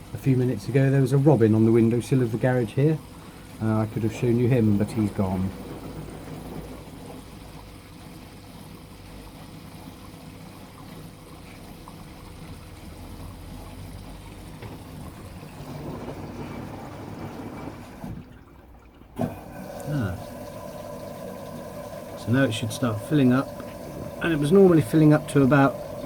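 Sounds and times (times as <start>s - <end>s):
washing machine motor hum: 0.0s - 26.0s
water trickling and swishing: 0.0s - 26.0s.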